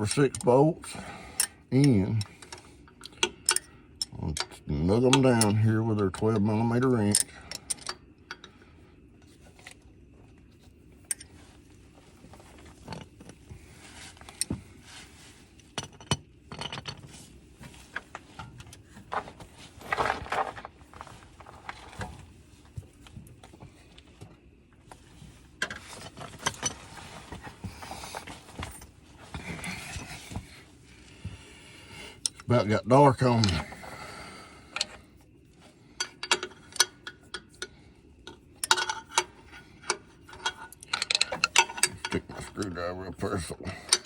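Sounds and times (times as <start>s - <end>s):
wrench clicking and scraping on metal: 36.0s - 42.7s.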